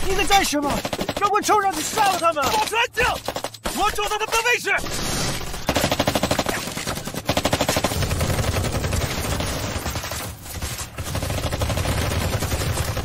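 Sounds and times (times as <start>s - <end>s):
automatic gunfire: 5.4s - 13.0s.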